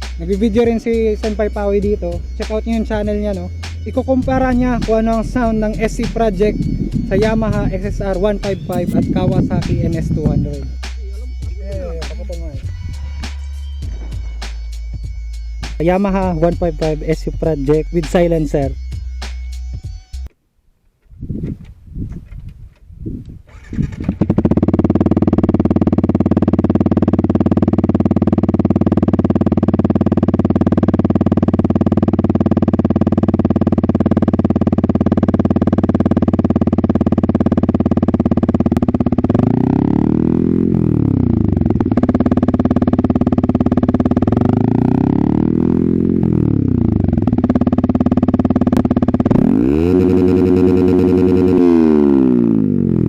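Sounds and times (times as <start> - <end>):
motorcycle engine idling and revving: 0.0 - 20.3, 23.3 - 53.0.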